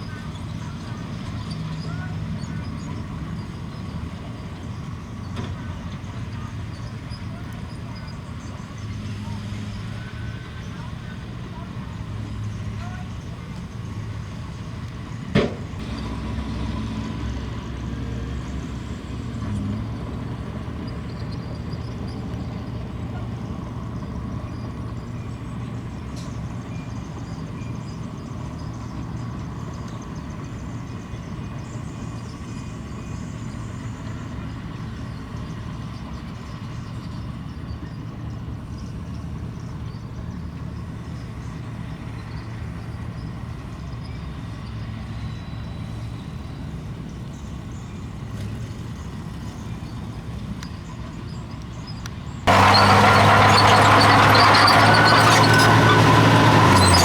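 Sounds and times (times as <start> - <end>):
heavy diesel machinery engines: 0.0 - 57.0.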